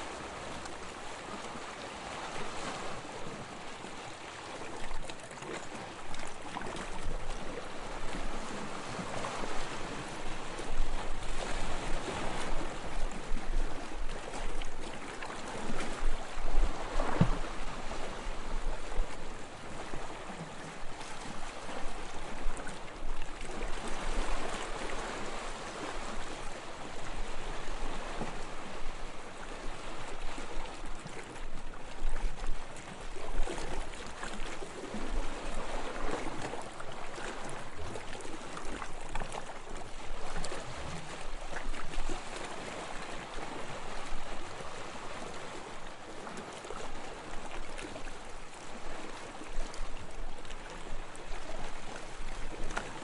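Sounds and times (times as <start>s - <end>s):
sea water lapping and splashing: 0.0s - 53.0s.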